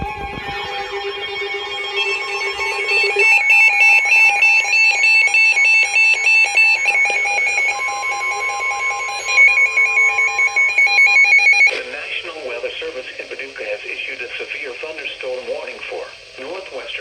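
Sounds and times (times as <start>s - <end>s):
rapid electronic alert beeps: 0.0s - 11.8s
steady electronic tone: 0.0s - 12.6s.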